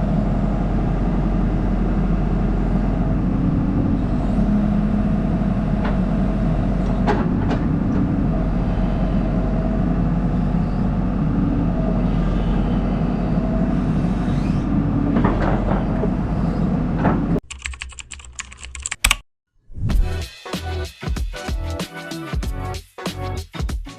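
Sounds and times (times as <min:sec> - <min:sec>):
excavator engine running: 0:00.0 - 0:19.0.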